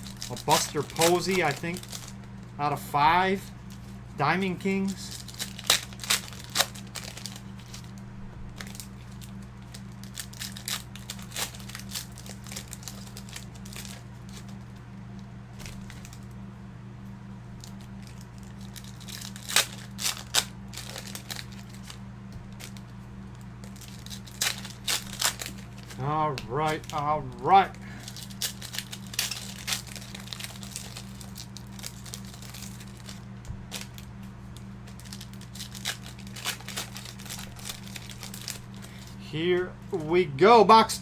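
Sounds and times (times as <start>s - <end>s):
trading cards crinkling and rustling: 0.0s - 16.4s, 17.5s - 40.9s
low hum: 0.0s - 41.0s.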